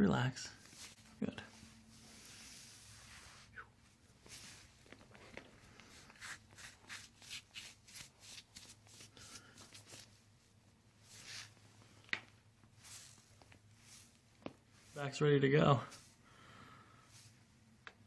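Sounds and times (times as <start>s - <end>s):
hands brushing over back and clothing: 0.6s - 16.2s, 17.0s - 17.6s.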